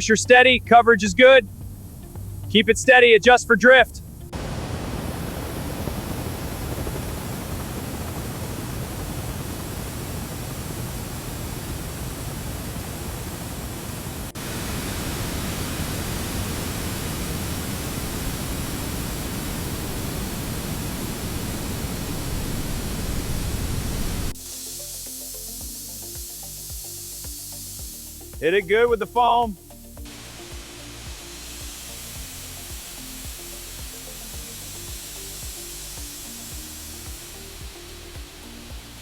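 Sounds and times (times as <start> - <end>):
water spray hitting a roof: 4.4 - 28.3, 30.0 - 39.0.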